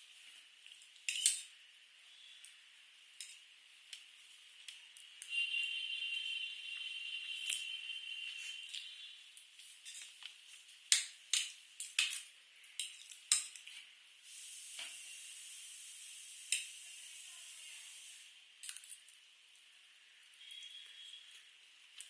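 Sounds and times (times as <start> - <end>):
steady high hiss: 14.1 - 18.5.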